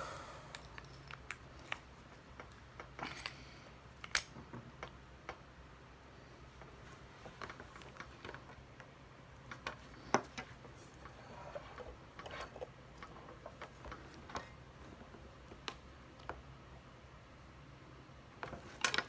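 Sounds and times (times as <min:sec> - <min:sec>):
low steady hum: 0:00.0 - 0:19.0
plastic toy clicking and snapping: 0:04.0 - 0:04.3.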